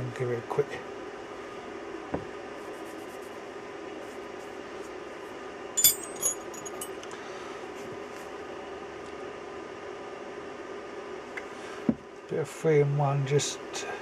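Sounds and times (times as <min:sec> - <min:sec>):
metal hand tools clinking: 0:05.8 - 0:07.0.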